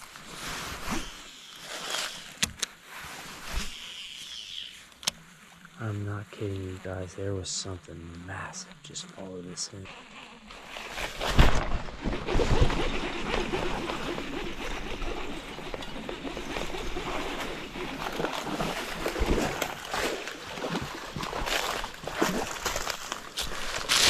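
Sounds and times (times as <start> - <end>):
water splashing in creek: 9.8 - 24.0.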